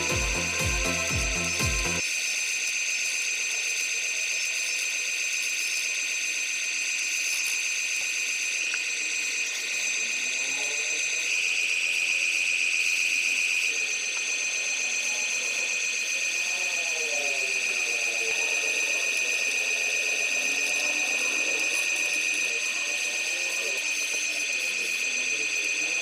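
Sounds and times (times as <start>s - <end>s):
electric motor whining: 0.0s - 26.0s.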